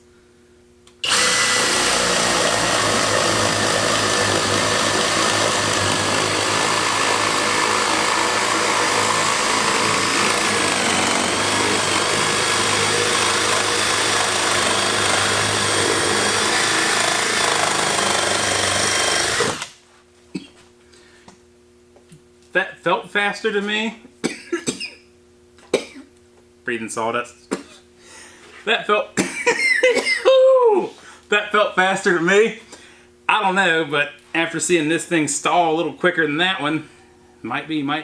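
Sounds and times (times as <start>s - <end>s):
drill boring through wood: 1.0s - 19.8s.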